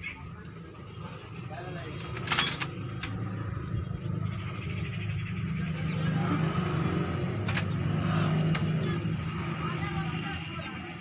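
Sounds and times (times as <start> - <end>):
sharp clicks: 7.4 - 7.8.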